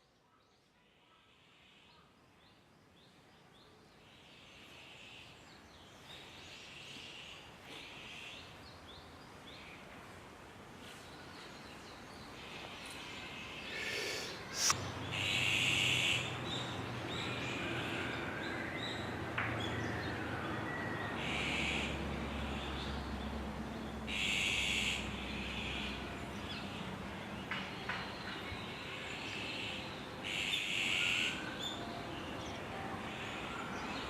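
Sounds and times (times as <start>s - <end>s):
wild birds calling: 12.2s - 34.0s.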